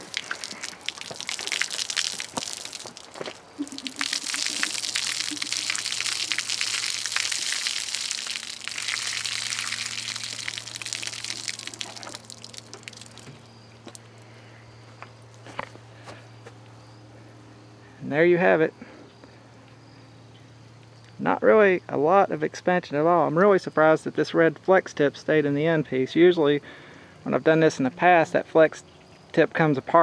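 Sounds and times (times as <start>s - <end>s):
water gushing and splashing: 0.0s - 13.5s.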